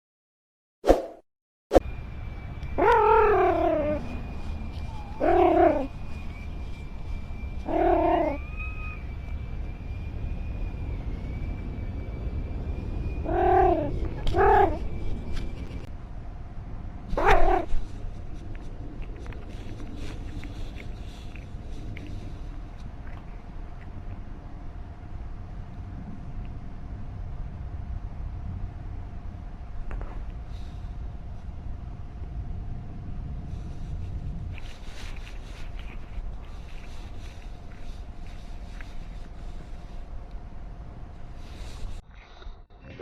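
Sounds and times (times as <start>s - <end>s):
cat meowing: 2.8s - 4.1s, 4.8s - 5.9s, 7.6s - 8.4s, 13.2s - 14.8s.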